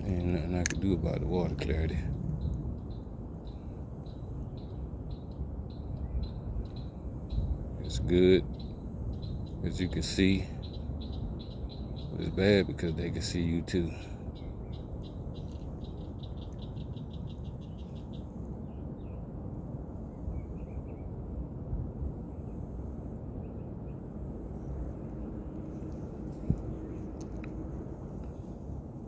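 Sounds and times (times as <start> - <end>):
steady low rumble: 0.0 - 3.7, 23.2 - 29.0
insects chirping: 0.0 - 4.8, 24.0 - 28.8
sharp click: 0.6 - 0.8.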